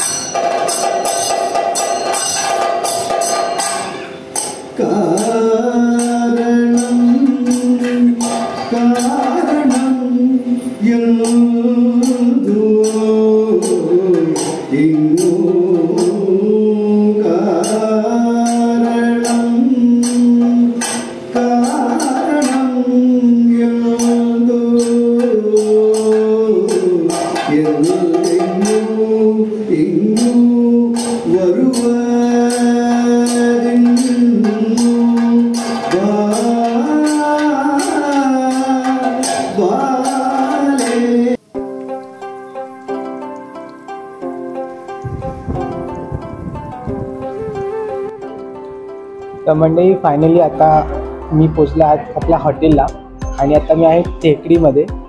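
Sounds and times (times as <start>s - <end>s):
voice singing long sliding notes: 43.5s - 54.4s.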